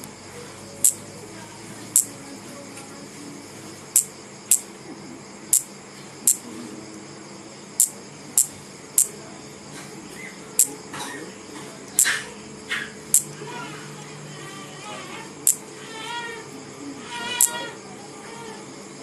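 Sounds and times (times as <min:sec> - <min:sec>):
faint steady background noise: 0:00.0 - 0:19.0
bug zapper snapping: 0:15.4 - 0:15.6.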